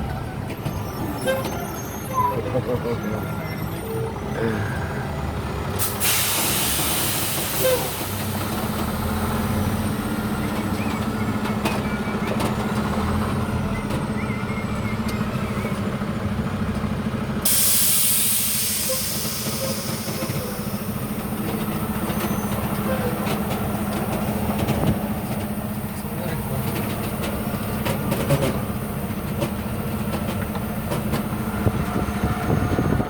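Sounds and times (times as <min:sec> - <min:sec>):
vehicle humming: 0:00.0 - 0:33.0
air hissing bursts: 0:05.8 - 0:08.4, 0:17.4 - 0:21.0.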